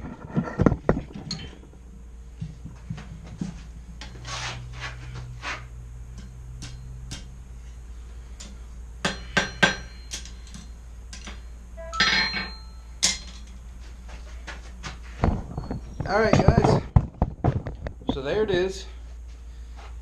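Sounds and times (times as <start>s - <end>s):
hammer striking steel bar: 6.2s - 7.4s, 8.4s - 13.4s.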